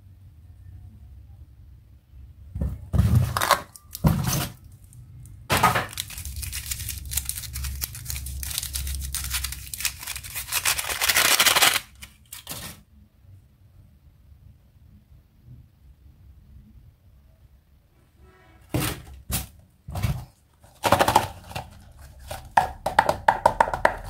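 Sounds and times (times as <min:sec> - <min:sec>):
packaging crackling and rustling: 0:03.2 - 0:12.8, 0:18.9 - 0:22.8
packaging tearing: 0:03.3 - 0:04.6, 0:05.5 - 0:12.8.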